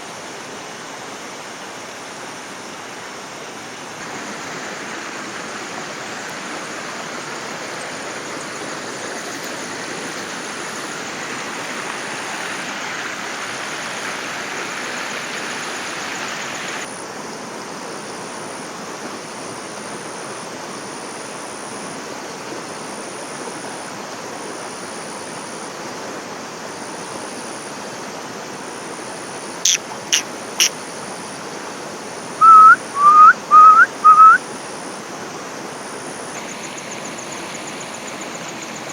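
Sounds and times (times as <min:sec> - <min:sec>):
flowing water rushing: 0:00.0 - 0:38.9
short rising whistled notes: 0:32.4 - 0:34.4.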